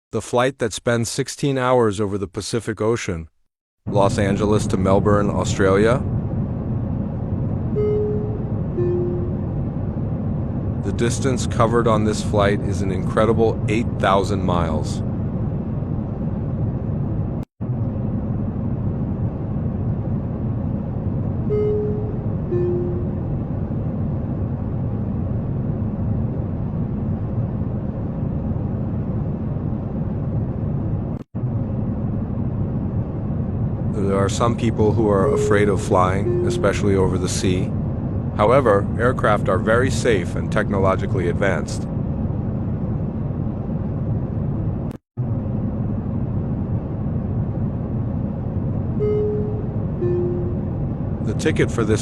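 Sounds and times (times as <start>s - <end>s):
airliner cabin engine noise: 3.9s - 52.0s
steady electronic tone: 7.4s - 10.8s, 21.2s - 24.4s, 35.0s - 37.8s, 48.8s - 51.6s.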